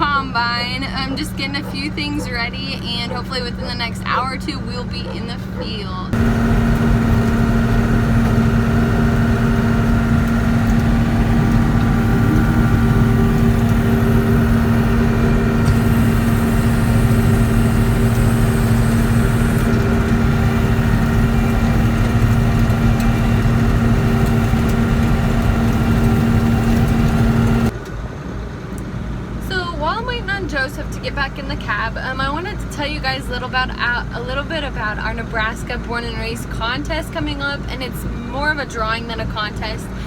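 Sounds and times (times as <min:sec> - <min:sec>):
combine harvester engine running: 0:00.0 - 0:28.7.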